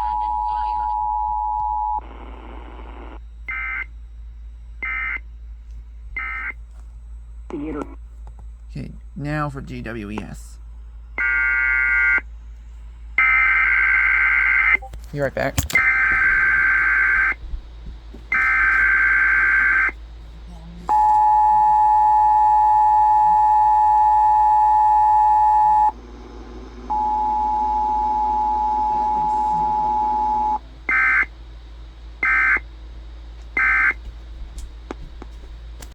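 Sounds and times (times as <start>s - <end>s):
low hum: 0.0s - 35.9s
screechy data tone bursts: 11.2s - 12.2s, 13.2s - 14.9s, 15.6s - 17.4s, 18.3s - 20.0s, 26.9s - 31.4s, 32.2s - 32.7s, 33.6s - 34.0s
steady single tone: 26.8s - 31.3s
two-tone attention signal: 26.9s - 31.3s.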